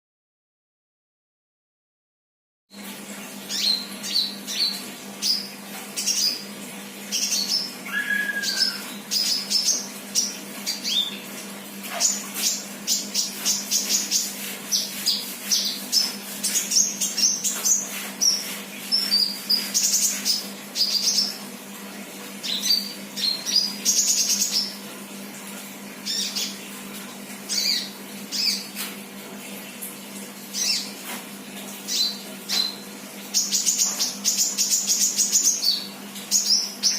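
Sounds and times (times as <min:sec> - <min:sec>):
bird chirps and trills: 0:03.5 - 0:06.4, 0:07.1 - 0:11.3, 0:11.9 - 0:21.4, 0:22.4 - 0:24.8, 0:26.0 - 0:26.6, 0:27.5 - 0:28.7, 0:30.5 - 0:31.0, 0:31.9 - 0:36.9.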